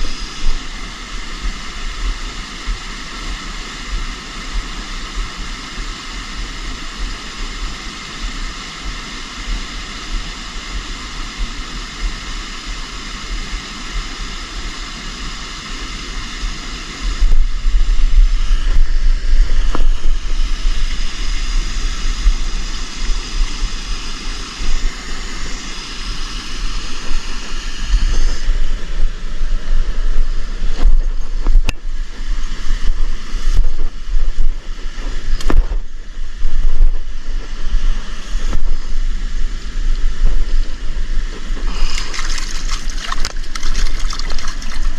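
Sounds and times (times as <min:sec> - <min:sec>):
river water rushing: 0:41.7 - 0:44.9.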